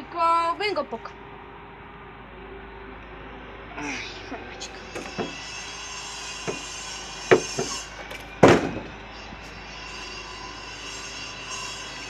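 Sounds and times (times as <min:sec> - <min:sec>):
faint steady hum: 0:00.0 - 0:12.0
sharp knocks: 0:05.0 - 0:05.5, 0:06.4 - 0:09.1.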